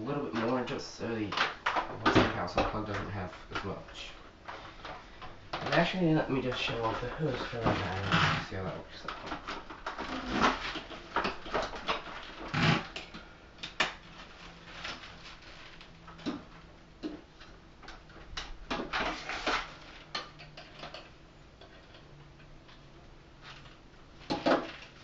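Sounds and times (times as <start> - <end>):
plastic vacuum hose clicks and rattles: 9.0 - 14.0.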